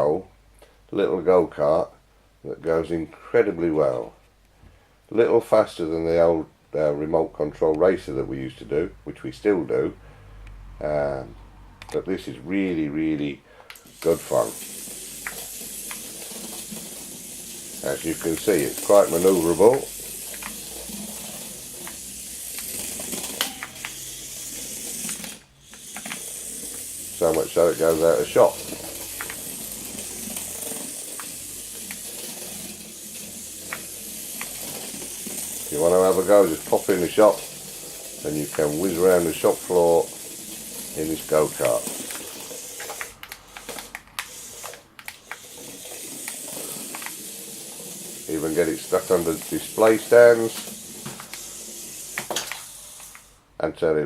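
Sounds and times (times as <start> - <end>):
sharp clicks and ticks: 13.7 - 17.0, 17.6 - 21.0, 21.8 - 32.4, 41.3 - 45.6
small electric motor whirring: 13.8 - 53.4.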